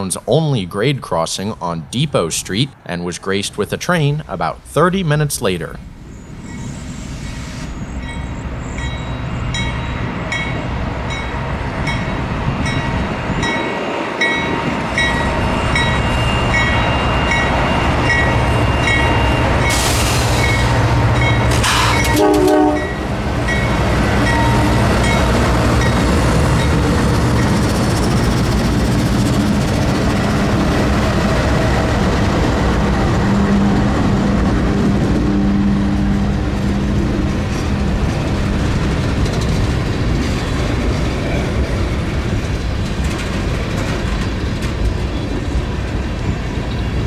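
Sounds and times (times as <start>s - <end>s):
diesel locomotive rumble: 0.0s - 13.8s, 14.5s - 47.0s
loud rush of noise: 5.8s - 9.5s, 19.6s - 23.4s
crossing bell dinging: 8.0s - 19.8s, 20.4s - 27.8s
train horn note: 19.7s - 23.3s.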